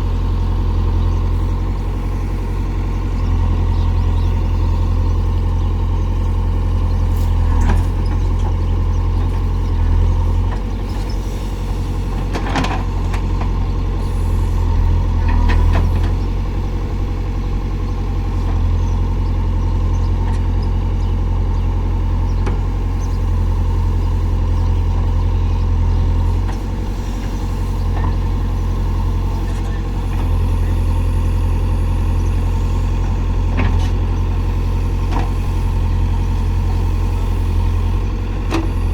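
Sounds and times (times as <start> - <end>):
diesel engine humming: 0.0 - 38.9.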